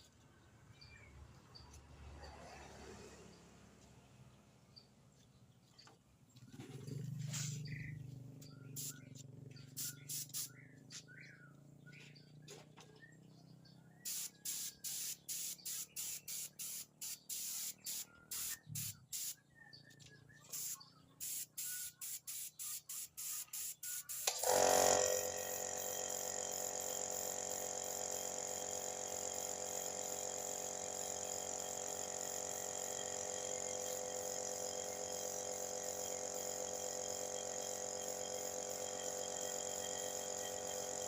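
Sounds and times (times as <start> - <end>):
birds chirping: 4.8 - 24.2
spray hissing bursts: 8.8 - 9.0, 9.7 - 10.5, 14.1 - 19.4, 20.5 - 41.0.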